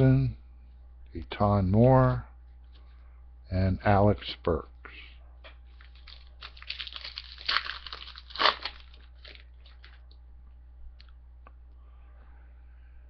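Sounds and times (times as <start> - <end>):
wrapper crinkling and tearing: 5.8 - 10.1.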